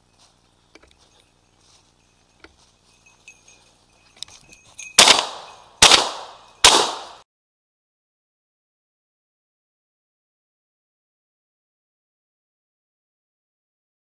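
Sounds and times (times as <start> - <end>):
shotgun shots: 5.0 - 7.2.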